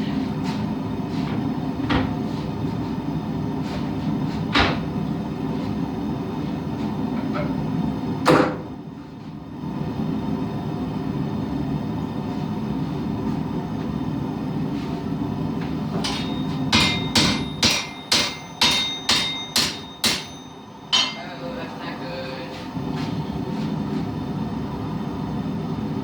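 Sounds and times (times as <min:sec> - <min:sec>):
forge running: 0:15.4 - 0:26.0
metal knocks of tools: 0:16.0 - 0:21.4.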